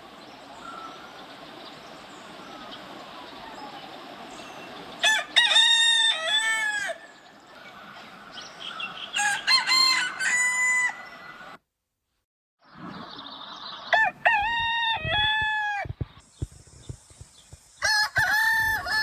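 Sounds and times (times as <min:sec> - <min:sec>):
rooster crowing: 0:05.0 - 0:07.3, 0:08.9 - 0:11.6, 0:13.9 - 0:16.0, 0:17.8 - 0:19.0.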